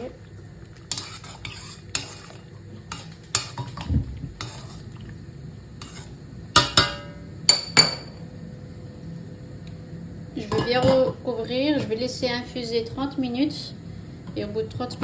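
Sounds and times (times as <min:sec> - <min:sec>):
spoon stirring liquid in saucepan: 0:00.3 - 0:05.2, 0:05.8 - 0:08.1.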